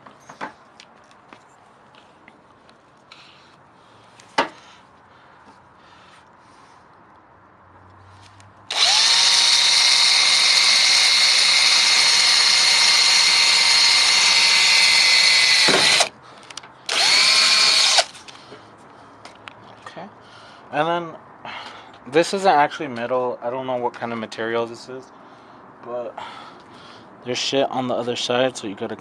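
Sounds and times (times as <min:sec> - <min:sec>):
power drill whining: 0:08.7 - 0:16.1, 0:16.9 - 0:18.2.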